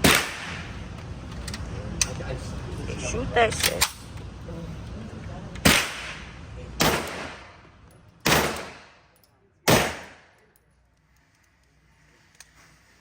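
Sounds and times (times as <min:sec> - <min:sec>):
handgun shots with echo: 0:00.0 - 0:00.6, 0:05.6 - 0:06.2, 0:06.8 - 0:07.5, 0:08.2 - 0:09.0, 0:09.7 - 0:10.4.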